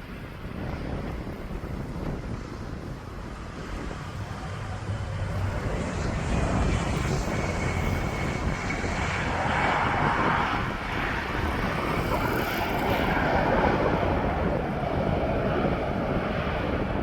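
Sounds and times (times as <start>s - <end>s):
high jet whine: 0.0s - 17.0s
jet engines rumbling: 0.0s - 17.0s.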